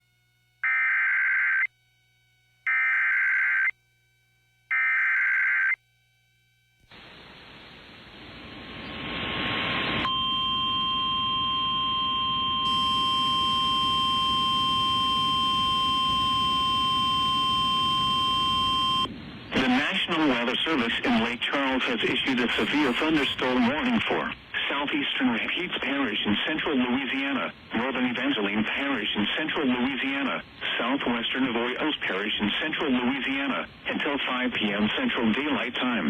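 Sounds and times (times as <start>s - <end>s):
radio static hiss: 6.9s - 10.1s, 19.0s - 36.0s.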